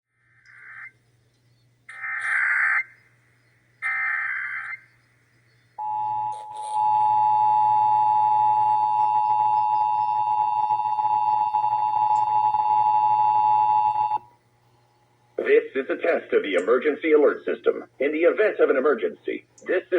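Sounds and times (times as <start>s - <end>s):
screechy digital data bursts: 1.9s - 2.9s, 3.8s - 4.9s
two-tone attention signal: 5.8s - 14.2s.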